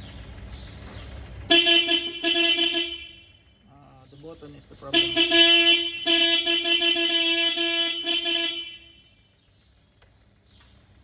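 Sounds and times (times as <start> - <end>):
electric horn blasts: 1.5 - 3.4, 4.9 - 9.0.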